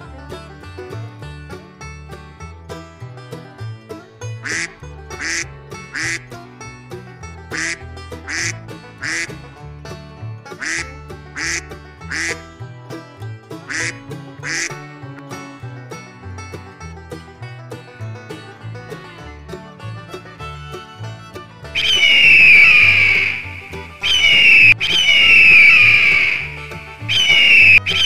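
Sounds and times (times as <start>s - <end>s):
banjo music: 0.0s - 28.0s
duck quacking: 4.4s - 6.3s, 7.5s - 9.4s, 10.6s - 12.4s, 13.7s - 14.8s, 21.8s - 28.0s.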